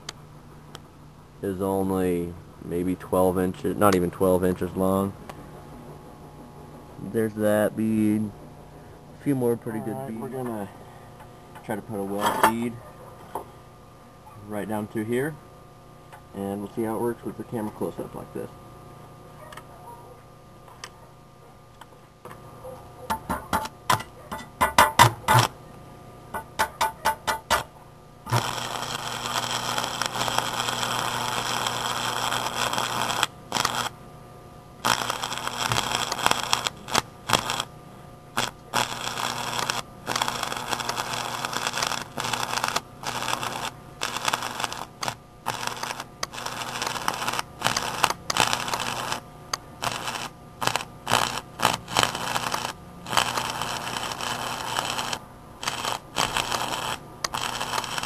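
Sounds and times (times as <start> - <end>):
welding rod scratch strikes: 23.1 - 25.6, 26.3 - 34.0, 34.8 - 37.7, 38.4 - 58.0
welding arc crackling: 26.3 - 34.0, 34.8 - 58.0.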